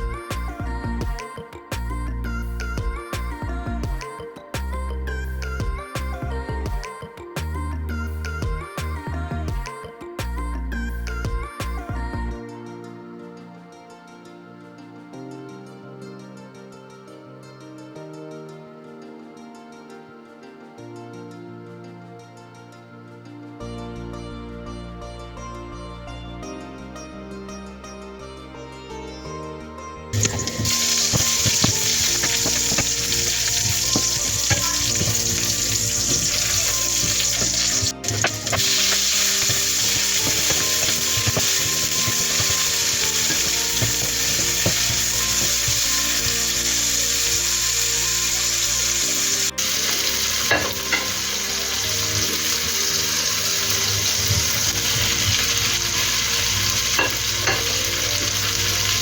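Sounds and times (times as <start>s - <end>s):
utensil clicking while stirring: 30.2s - 46.4s
meat and mushrooms sizzling in a pan: 30.2s - 59.0s.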